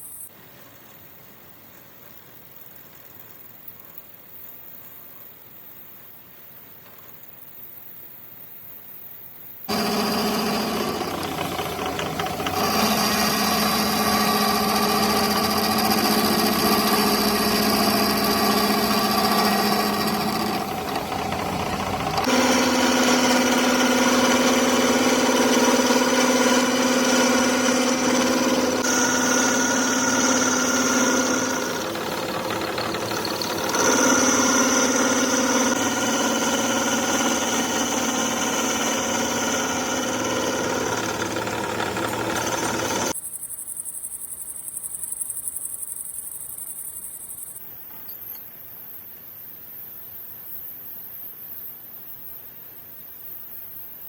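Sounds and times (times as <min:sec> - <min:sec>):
workshop machinery hum and whine: 0:09.7 - 0:43.2.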